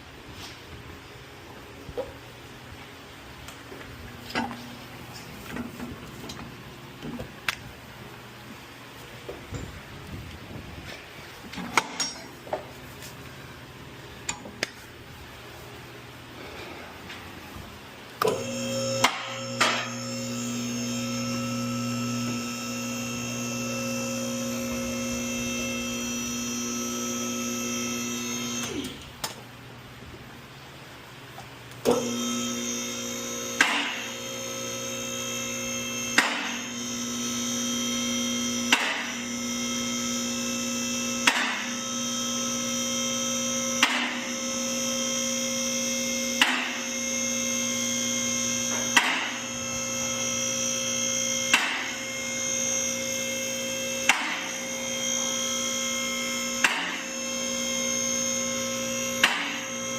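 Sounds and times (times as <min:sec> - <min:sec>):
electric motor humming: 0:18.3 - 0:28.9.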